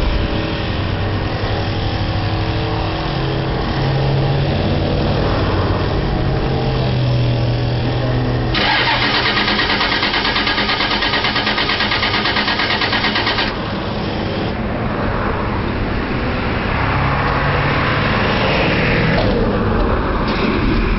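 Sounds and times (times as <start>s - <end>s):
engine cranking by starter: 8.6s - 14.5s.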